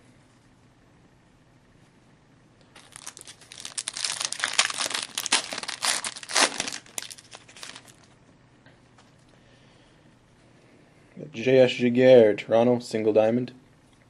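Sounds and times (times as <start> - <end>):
wrapper tearing and crinkling: 2.8 - 8.1.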